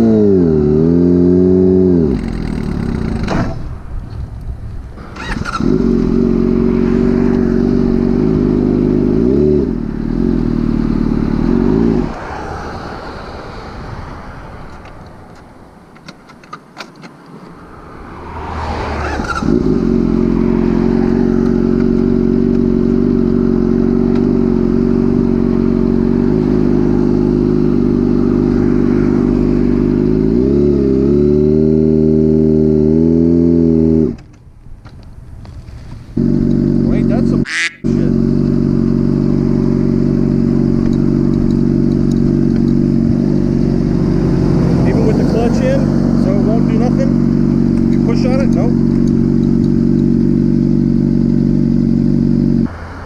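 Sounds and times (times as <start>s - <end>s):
motorcycle engine running: 4.4s - 12.1s, 19.1s - 34.2s, 35.4s - 52.7s.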